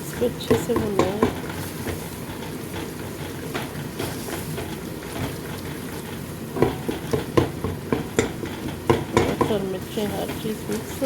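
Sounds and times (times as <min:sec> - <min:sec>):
curry sizzling in oil: 0:00.0 - 0:11.0
spoon knocking against pot: 0:00.5 - 0:01.4, 0:06.6 - 0:09.7.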